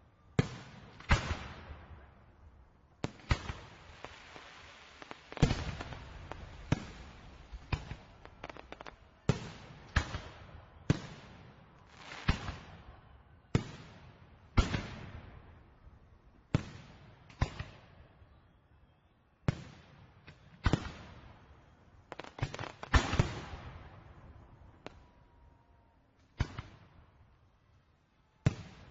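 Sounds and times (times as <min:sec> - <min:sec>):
fireworks exploding with crackle: 0:03.0 - 0:13.0, 0:19.5 - 0:25.4.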